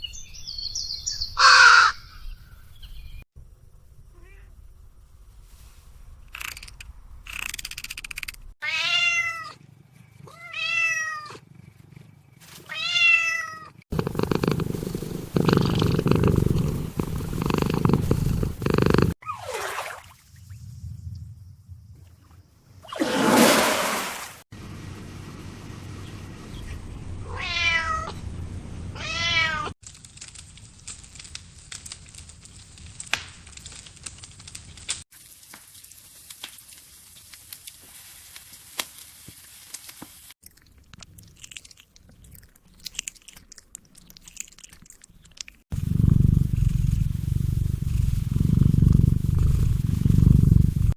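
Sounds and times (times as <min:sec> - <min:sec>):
crackling clicks: 0:06.3 - 0:08.5, 0:29.8 - 0:35.0
cat meowing: 0:08.6 - 0:09.6, 0:10.3 - 0:11.4, 0:12.7 - 0:19.2, 0:27.2 - 0:28.2, 0:29.0 - 0:29.7
loud low cat purr: 0:13.9 - 0:19.2, 0:45.7 - 0:50.9.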